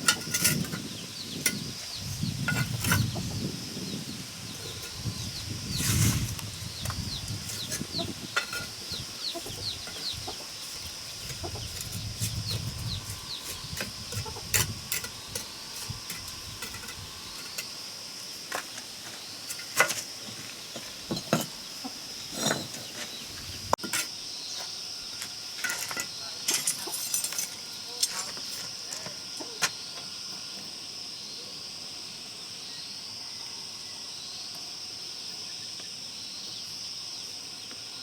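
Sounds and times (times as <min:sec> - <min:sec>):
chickens clucking: 0:00.0 - 0:03.6, 0:04.5 - 0:15.5.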